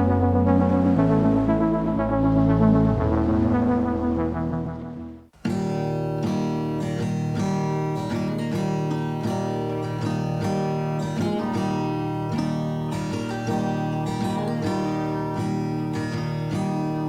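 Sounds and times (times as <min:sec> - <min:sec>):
strummed acoustic guitar: 0:05.4 - 0:17.0.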